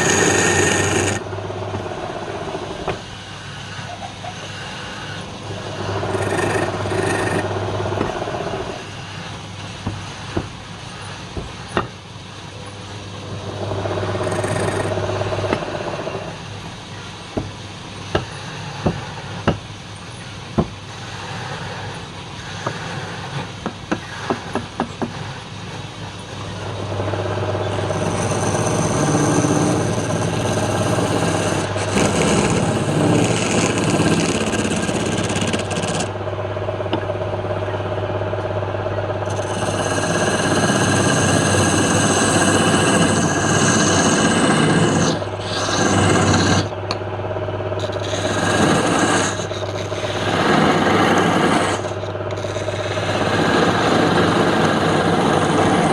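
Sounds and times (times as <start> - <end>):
wood lathe motor humming: 0.0 - 3.9, 4.5 - 9.3, 13.3 - 16.3, 26.6 - 37.0, 39.2 - 47.0, 47.6 - 55.9
tool scraping spinning wood: 0.0 - 12.0, 12.9 - 16.4, 20.9 - 37.4, 39.0 - 47.0, 47.6 - 55.9.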